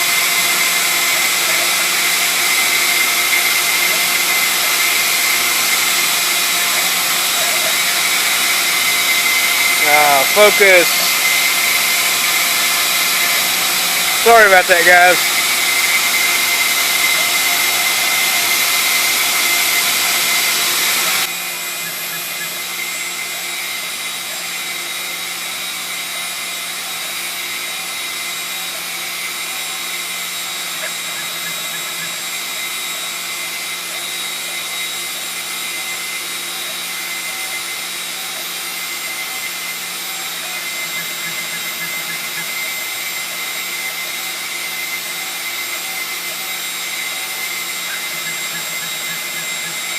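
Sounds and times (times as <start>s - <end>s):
router spindle whine: 0.0s - 49.9s
shop vacuum air rush: 0.0s - 49.9s
loud hiss: 4.5s - 21.0s.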